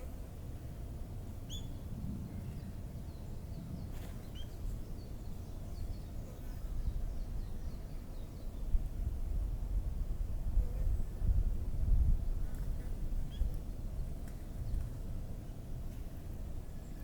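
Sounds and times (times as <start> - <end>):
songbirds chirping: 0.0 - 9.2.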